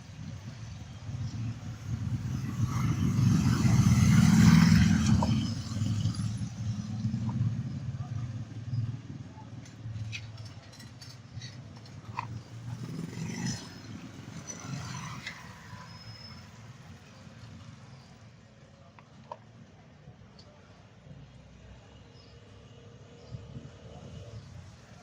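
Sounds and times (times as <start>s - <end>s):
passing vehicle engine rumble: 0.0s - 18.9s.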